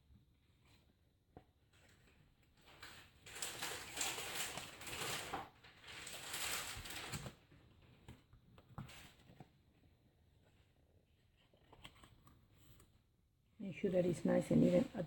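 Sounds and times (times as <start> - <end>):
cardstock folding and rustling: 0.1 - 13.2.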